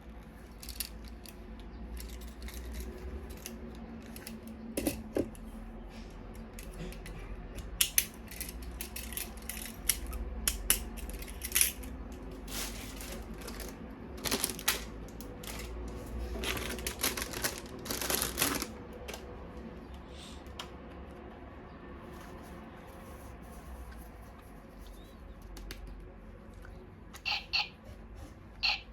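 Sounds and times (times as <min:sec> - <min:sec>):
plastic toy parts clicking and snapping: 0:00.4 - 0:05.4, 0:07.6 - 0:12.2
packaging rustling: 0:12.5 - 0:19.2.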